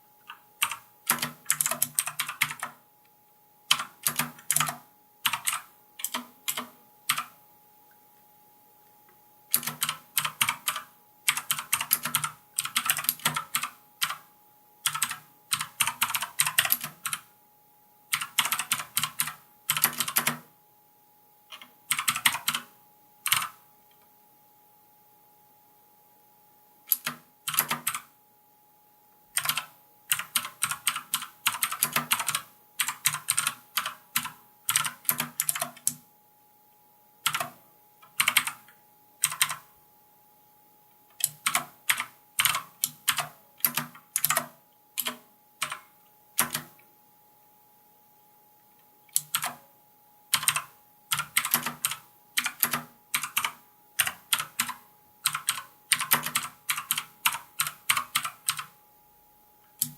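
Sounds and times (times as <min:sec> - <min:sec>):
faint steady tone: 0:00.0 - 0:59.9
clicky mechanical keyboard typing: 0:00.2 - 0:02.8, 0:03.7 - 0:07.4, 0:09.5 - 0:17.3, 0:18.1 - 0:20.5, 0:21.5 - 0:22.7, 0:23.3 - 0:23.6, 0:26.9 - 0:28.1, 0:29.4 - 0:36.0, 0:37.2 - 0:39.7, 0:41.1 - 0:46.8, 0:49.1 - 0:49.6, 0:50.3 - 0:58.8.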